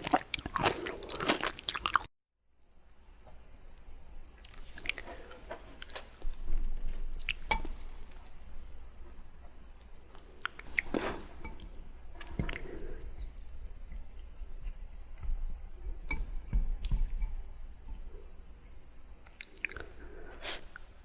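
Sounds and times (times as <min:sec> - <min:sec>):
person chewing: 0:00.0 - 0:02.1, 0:04.4 - 0:08.4, 0:10.0 - 0:15.4, 0:19.2 - 0:20.9
wet mouth sounds: 0:12.2 - 0:13.1, 0:19.3 - 0:20.8
sharp mouth clicks: 0:19.3 - 0:19.9.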